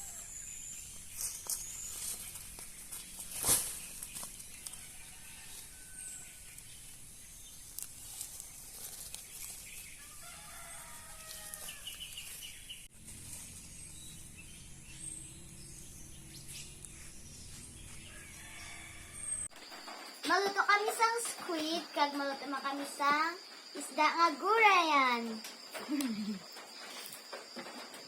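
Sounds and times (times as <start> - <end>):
rooster crowing: 4.8 - 6.4, 10.0 - 12.0, 17.9 - 19.5
faint small-bird chirps: 23.7 - 27.2.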